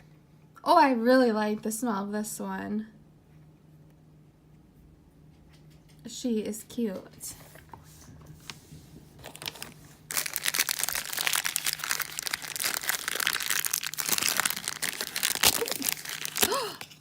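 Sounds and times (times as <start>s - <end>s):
plastic packet crinkling: 9.2s - 17.0s.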